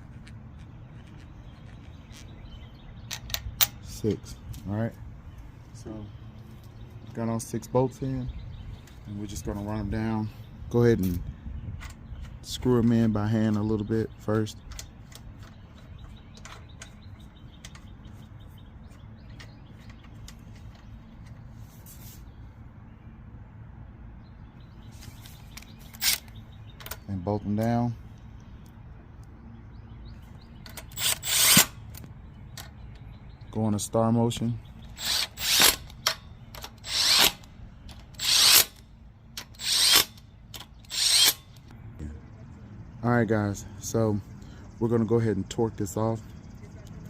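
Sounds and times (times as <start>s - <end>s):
small metal clicks of bolts: 3.0s - 3.9s
power tool bursts: 31.0s - 31.8s, 38.2s - 38.8s, 39.5s - 40.2s.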